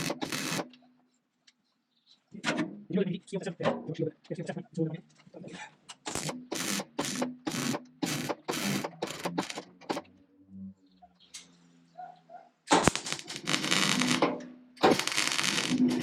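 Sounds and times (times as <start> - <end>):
welder crackling bursts: 0.0 - 0.8, 6.0 - 10.1, 12.7 - 16.0.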